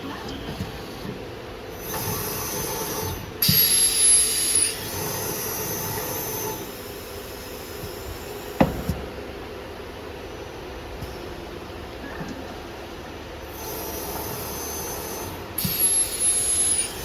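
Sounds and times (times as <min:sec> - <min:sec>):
machine hissing with high whine: 0:01.7 - 0:09.1, 0:13.4 - 0:17.0
sharp knock: 0:08.6 - 0:09.1.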